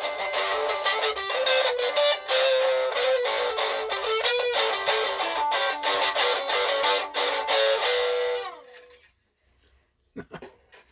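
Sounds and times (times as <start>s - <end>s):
electric guitar blues lick: 0.0s - 8.6s
looped guitar: 0.0s - 9.1s.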